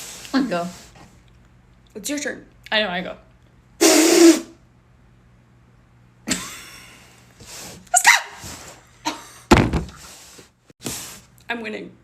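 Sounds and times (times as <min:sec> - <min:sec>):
person blowing breathy blasts: 0:03.8 - 0:04.6
person squealing: 0:07.9 - 0:08.5.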